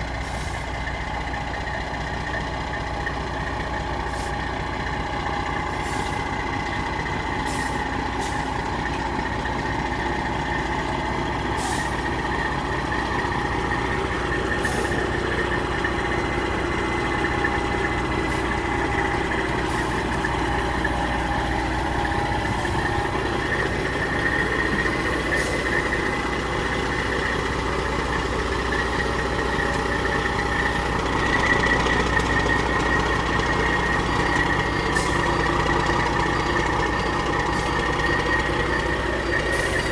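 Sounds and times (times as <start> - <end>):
truck engine running: 0.0 - 39.9.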